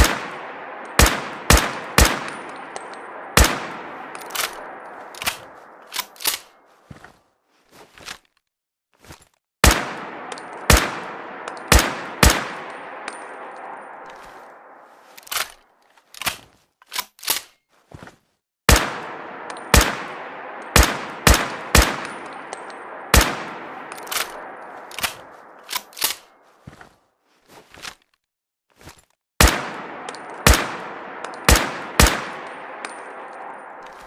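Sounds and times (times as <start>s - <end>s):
rifle gunshots echoing: 0.0s - 6.6s, 9.6s - 15.0s, 18.7s - 26.3s, 29.4s - 34.0s
metallic clicks: 4.1s - 6.6s.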